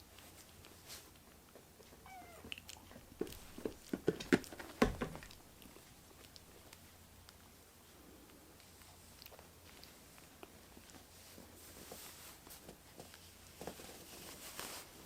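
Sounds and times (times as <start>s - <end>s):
kitten meowing: 2.0s - 2.6s
sharp taps and knocks: 3.2s - 5.4s.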